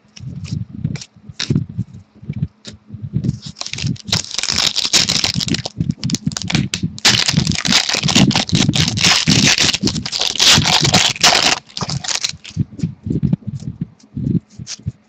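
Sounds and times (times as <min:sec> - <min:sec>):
foil wrapper crinkling and tearing: 0:03.5 - 0:12.5.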